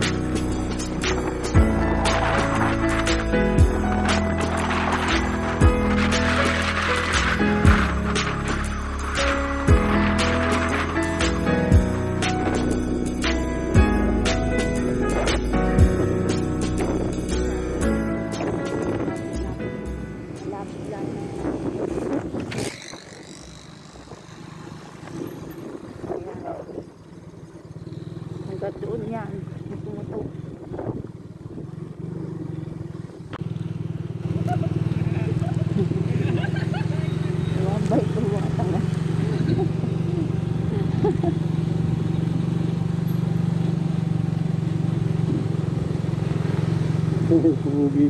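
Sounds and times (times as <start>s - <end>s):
vehicle engine running: 0.0s - 48.0s.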